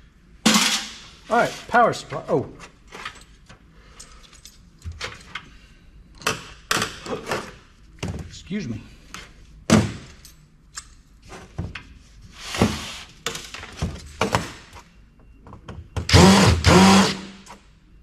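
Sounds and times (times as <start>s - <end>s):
cordless drill running: 16.1s - 17.4s.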